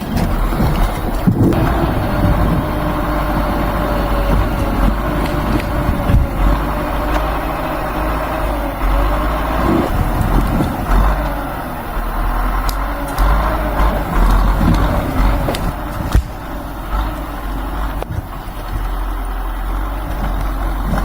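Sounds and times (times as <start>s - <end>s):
heavy machine engine running: 0.0s - 21.0s.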